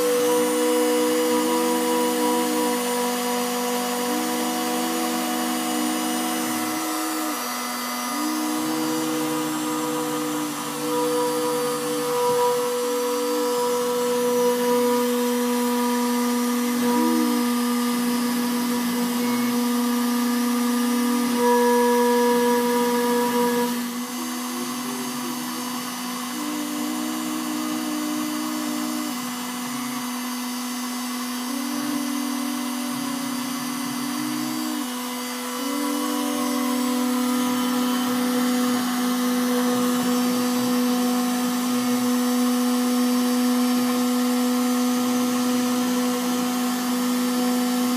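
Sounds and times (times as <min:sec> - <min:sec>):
cutting machine motor whine: 0:00.0 - 0:47.9
higher motor tones: 0:00.0 - 0:47.9.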